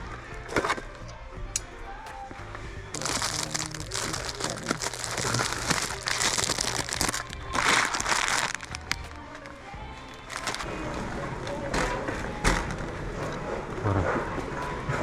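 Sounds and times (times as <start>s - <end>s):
faint background music: 0.0s - 15.0s
packaging crinkling: 2.9s - 10.7s.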